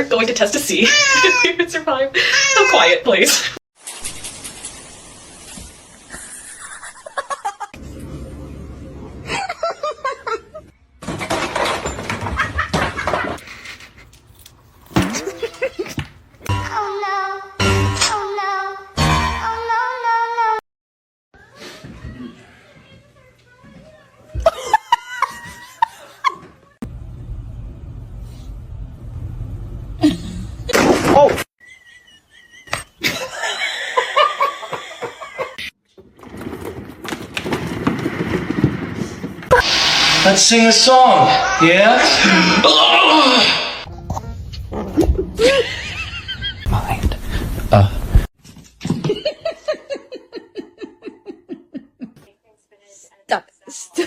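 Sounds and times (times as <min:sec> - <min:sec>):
person laughing: 0:06.1 - 0:07.7, 0:15.1 - 0:16.0, 0:44.9 - 0:46.6.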